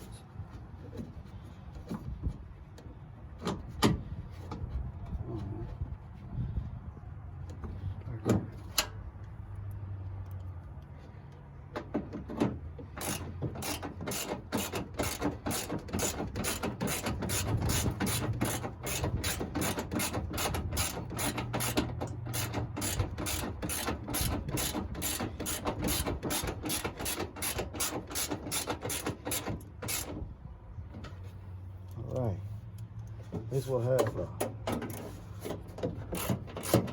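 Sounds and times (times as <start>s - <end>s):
ratchet wrench clicking: 13.0s - 30.1s.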